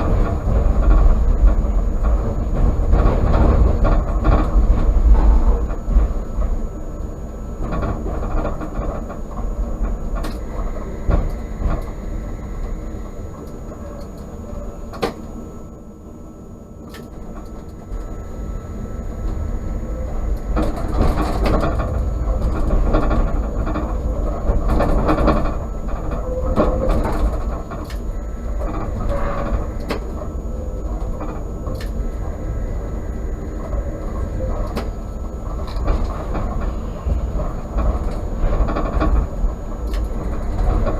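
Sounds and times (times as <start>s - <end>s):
tram rumbling on rails: 0.0s - 40.9s
sharp clicks and knocks: 7.6s - 12.0s, 14.9s - 15.3s, 28.6s - 30.3s, 37.8s - 40.9s.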